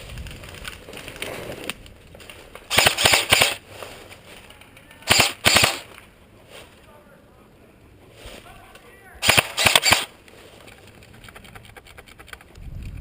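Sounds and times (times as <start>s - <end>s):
airsoft gun firing bursts: 2.7s - 3.6s, 5.0s - 6.0s, 9.2s - 10.1s.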